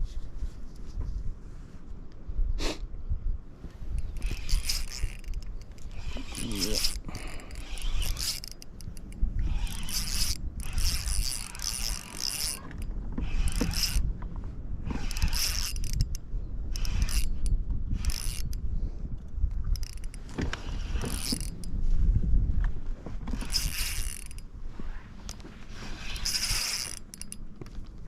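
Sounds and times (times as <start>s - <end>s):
fishing reel gears winding: 3.9s - 14.1s, 14.9s - 18.6s, 19.6s - 21.8s, 23.4s - 24.5s, 26.0s - 27.5s.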